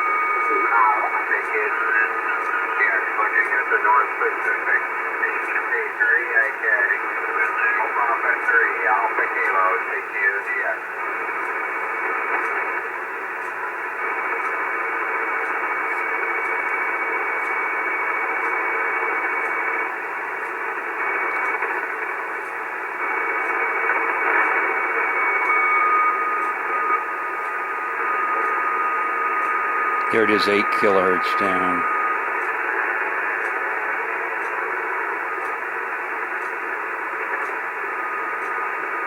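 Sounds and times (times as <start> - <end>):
radio static and hiss: 0.0 - 12.9, 27.9 - 35.4.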